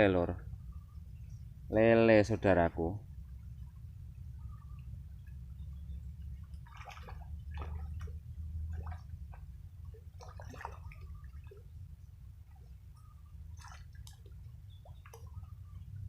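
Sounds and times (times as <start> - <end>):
steady low rumble: 0.0 - 16.0
water splashing and dripping: 6.2 - 15.6.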